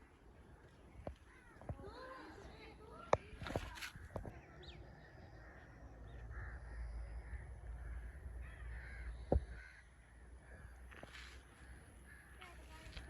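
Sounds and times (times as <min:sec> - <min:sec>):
crows cawing: 0:01.1 - 0:01.8, 0:05.2 - 0:13.0
steady low rumble: 0:04.2 - 0:12.3.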